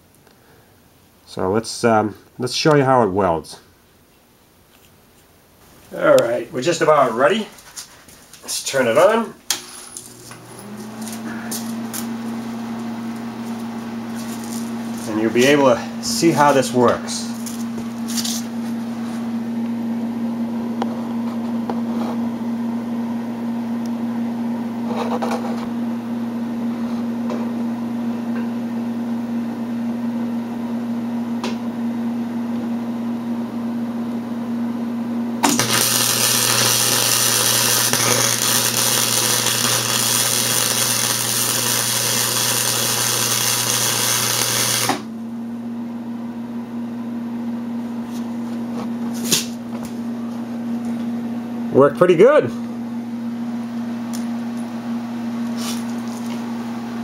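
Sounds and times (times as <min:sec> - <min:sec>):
welder electrical hum: 0:04.4 - 0:57.0
welding arc crackling: 0:08.4 - 0:18.5, 0:35.4 - 0:45.1.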